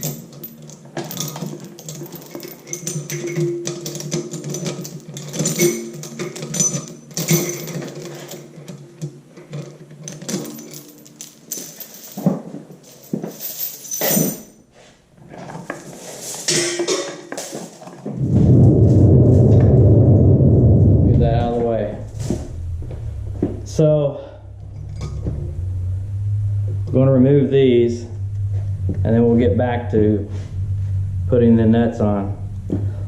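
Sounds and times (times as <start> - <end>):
metal tools clinking: 0.0 - 14.6
low rumble: 18.1 - 33.0.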